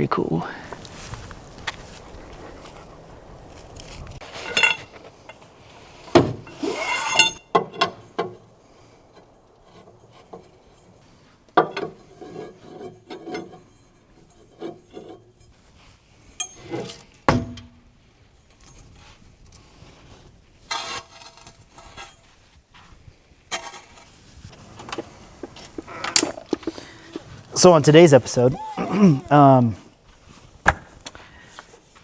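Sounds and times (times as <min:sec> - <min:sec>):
gear rubbing: 0:25.5 - 0:29.7.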